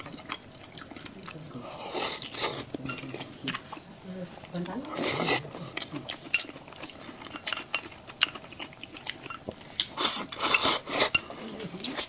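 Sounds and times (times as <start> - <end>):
person chewing and biting food: 0.0 - 1.4, 5.1 - 12.0.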